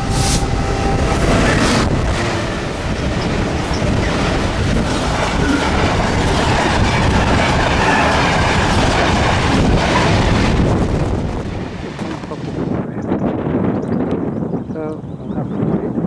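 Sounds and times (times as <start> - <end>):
train passing at speed: 0.0 - 12.8
wheels clattering over rails: 1.4 - 11.3.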